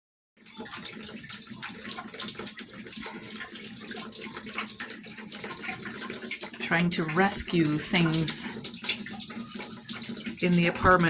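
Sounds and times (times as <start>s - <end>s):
water pouring and dripping: 0.4s - 11.0s.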